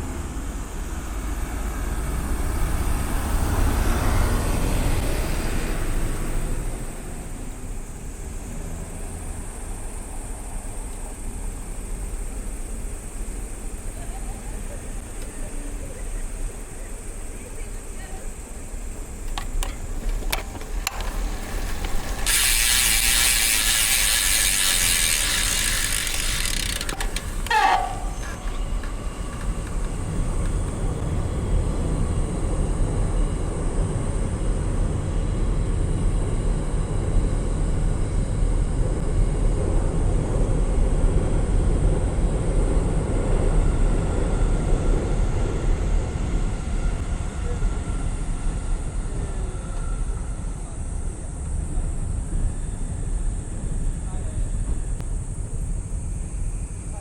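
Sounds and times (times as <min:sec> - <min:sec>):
wind and tyre rumble: 0:00.0 - 0:15.2, 0:16.3 - 0:57.0
bicycle freehub buzzing: 0:18.7 - 0:31.5.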